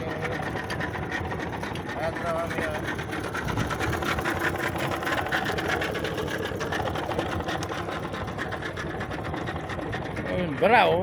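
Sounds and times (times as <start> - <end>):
outboard motor running: 0.0 - 11.0.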